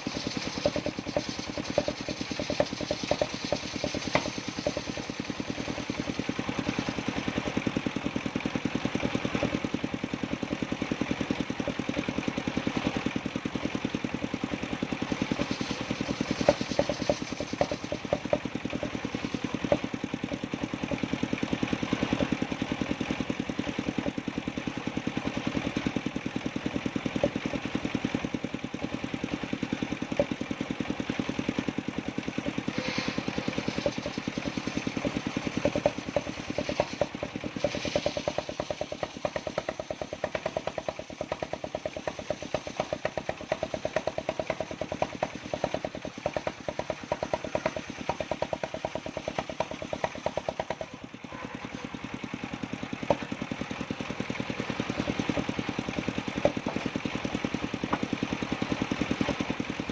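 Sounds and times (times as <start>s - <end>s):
saw mill engine running: 0.0s - 59.9s
sharp knocks: 0.2s - 6.0s, 15.4s - 19.9s, 32.8s - 51.0s.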